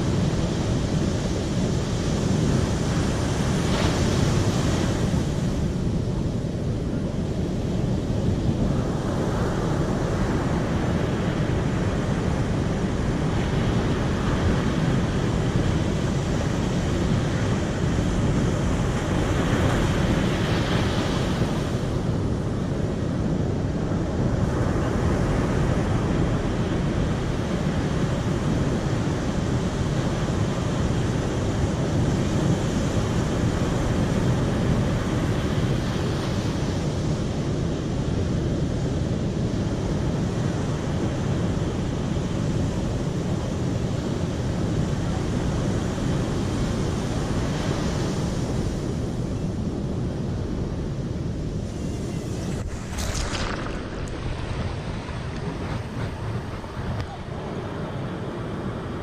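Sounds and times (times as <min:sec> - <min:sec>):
flowing water rushing: 0:51.6 - 0:57.4.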